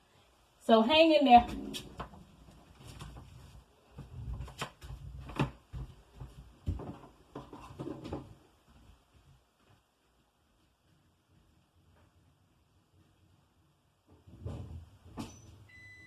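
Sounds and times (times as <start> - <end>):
knocks and thumps: 3.9 - 8.4, 14.1 - 15.4.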